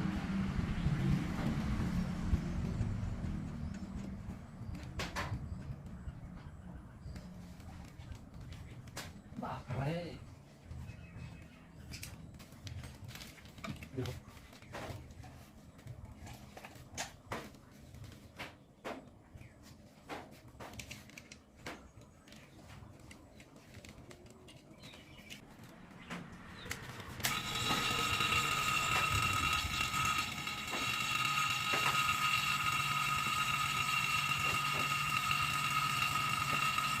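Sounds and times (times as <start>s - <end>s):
machine running with whine: 26.6s - 37.0s.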